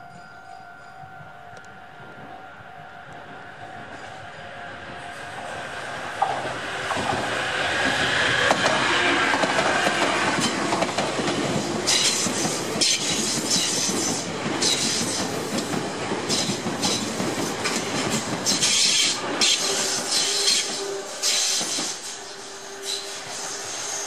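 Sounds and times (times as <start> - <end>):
train wheels clattering over rail joints: 6.2 - 23.1.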